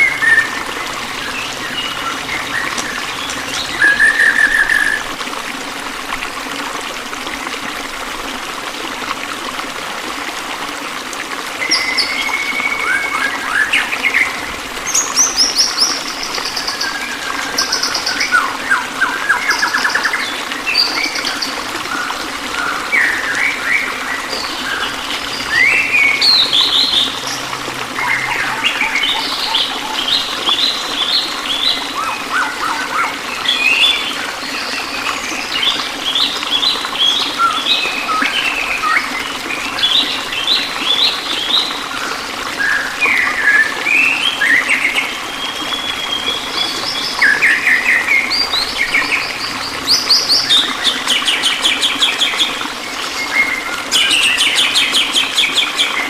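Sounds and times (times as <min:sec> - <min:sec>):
songbirds chirping: 0:00.0 - 0:05.2
running water hiss: 0:00.0 - 0:56.0.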